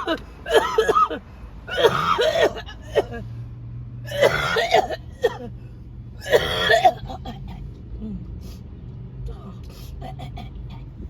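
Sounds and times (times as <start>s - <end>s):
woman coughing: 0.0s - 3.2s, 4.1s - 5.5s, 6.2s - 7.5s.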